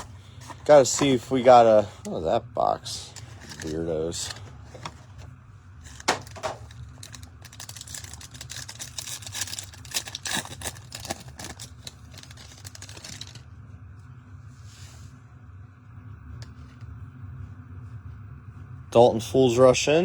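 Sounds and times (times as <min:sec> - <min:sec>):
card packs crinkling: 0:00.0 - 0:02.2, 0:02.8 - 0:13.4.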